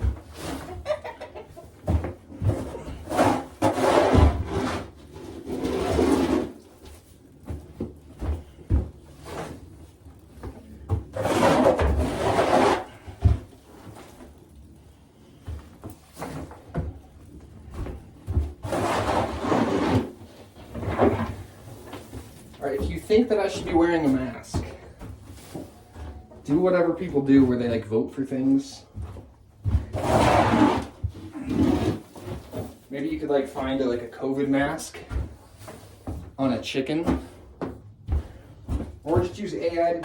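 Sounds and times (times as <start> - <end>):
tool scraping coop floor: 0.0 - 40.0
chickens clucking: 0.4 - 2.1.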